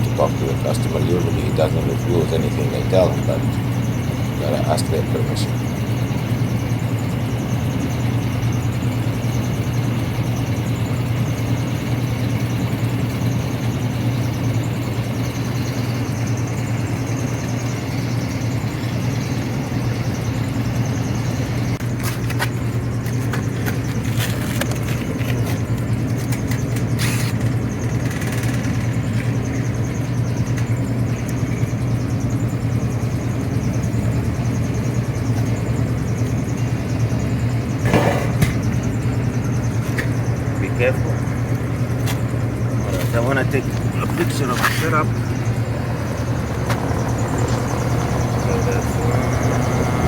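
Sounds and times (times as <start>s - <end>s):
air conditioner humming: 0.0s - 13.8s, 28.7s - 50.0s.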